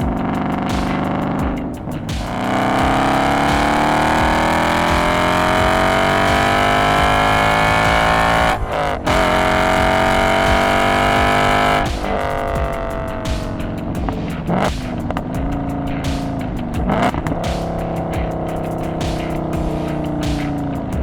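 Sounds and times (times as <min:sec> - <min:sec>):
car engine accelerating hard: 0:02.3 - 0:13.1.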